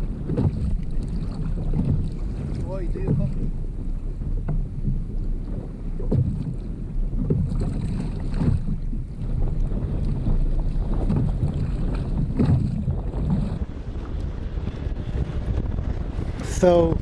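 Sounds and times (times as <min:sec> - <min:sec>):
water sloshing against hull: 0:00.0 - 0:17.0
wind buffeting microphone: 0:00.0 - 0:17.0.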